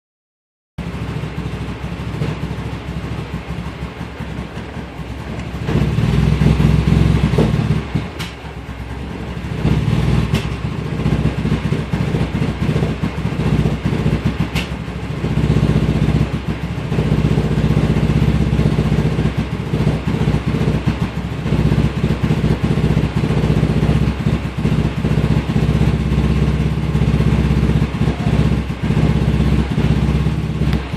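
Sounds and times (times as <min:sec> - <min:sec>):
engine idling roughly: 0:00.8 - 0:30.9.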